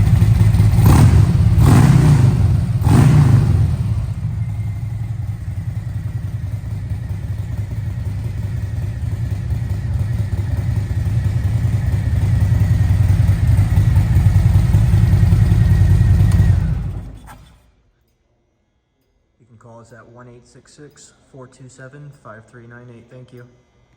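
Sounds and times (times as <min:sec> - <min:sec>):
motorcycle engine idling: 0:00.0 - 0:17.6.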